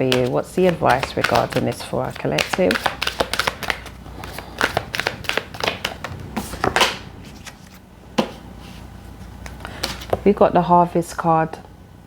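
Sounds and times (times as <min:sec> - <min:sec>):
card snapping: 0:00.0 - 0:08.4
cards being shuffled: 0:00.0 - 0:08.8, 0:09.4 - 0:10.2.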